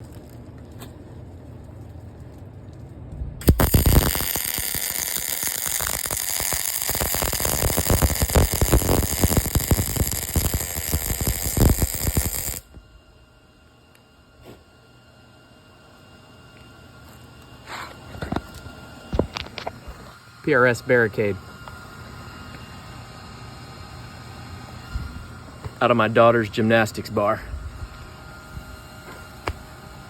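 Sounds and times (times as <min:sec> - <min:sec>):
welding arc crackling: 0:00.0 - 0:00.4, 0:03.4 - 0:12.7
low hum: 0:00.0 - 0:30.0.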